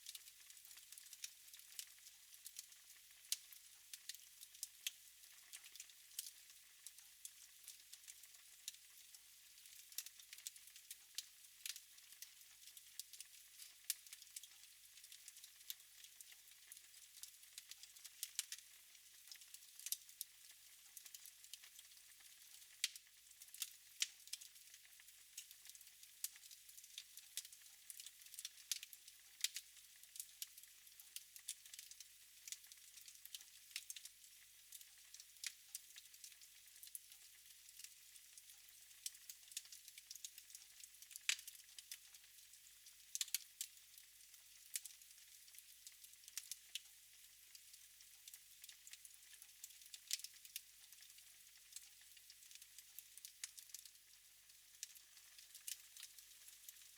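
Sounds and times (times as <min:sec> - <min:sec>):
wood fire crackling: 0:16.2 - 0:18.6, 0:22.8 - 0:30.6, 0:31.4 - 0:34.0, 0:41.1 - 0:41.9, 0:42.9 - 0:43.7, 0:44.7 - 0:45.0, 0:45.6 - 0:46.6, 0:48.2 - 0:52.6, 0:53.2 - 0:53.8, 0:54.8 - 0:56.9.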